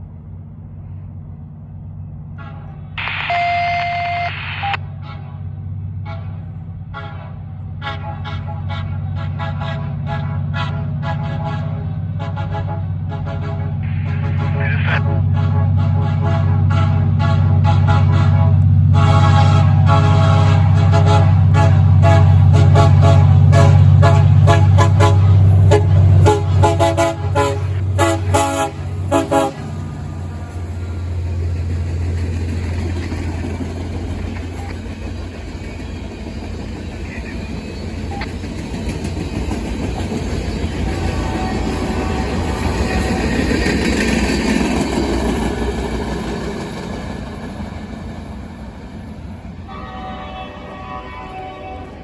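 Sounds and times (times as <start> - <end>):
loud low engine rumble: 0.0 - 52.0
air horn toots: 2.4 - 29.8, 40.7 - 43.0, 49.7 - 52.0.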